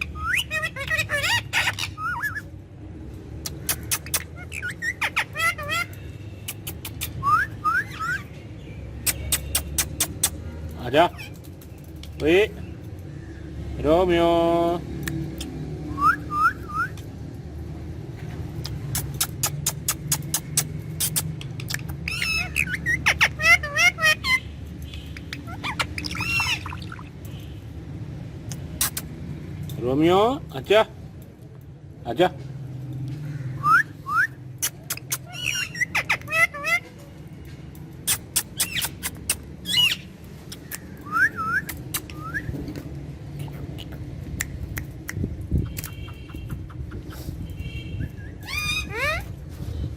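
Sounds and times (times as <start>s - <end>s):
parrot whistling: 0.0s - 2.5s, 3.9s - 5.9s, 7.1s - 8.3s, 15.9s - 17.0s, 25.4s - 27.0s, 33.6s - 34.4s, 38.1s - 40.1s, 41.0s - 42.5s, 47.9s - 49.3s
sharp clicks: 18.6s - 22.0s.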